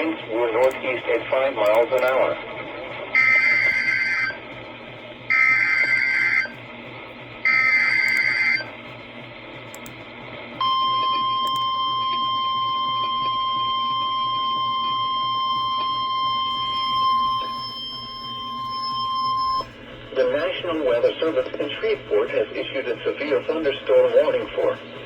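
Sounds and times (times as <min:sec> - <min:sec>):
steady warning alarm tone: 0:00.0 - 0:08.8, 0:10.6 - 0:25.0
buzzing data tones: 0:07.4 - 0:08.7.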